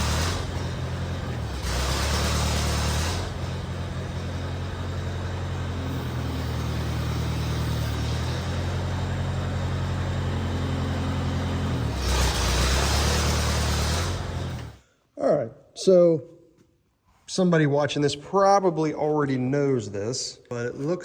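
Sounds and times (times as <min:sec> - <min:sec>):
tractor engine running: 0:00.0 - 0:14.8.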